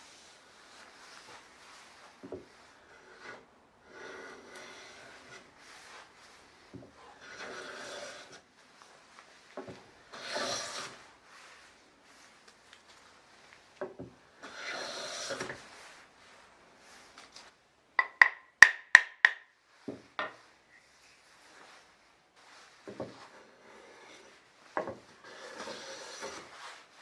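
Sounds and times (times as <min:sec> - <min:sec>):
hand plane rubbing on wood: 0:00.2 - 0:08.5, 0:10.1 - 0:11.7, 0:14.4 - 0:16.0, 0:22.8 - 0:27.0
hammer tapping a plane: 0:18.0 - 0:20.4.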